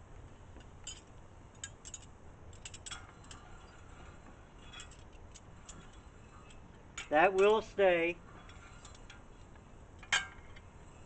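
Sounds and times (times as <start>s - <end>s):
faint metal clicks and clinks: 0.6s - 7.6s.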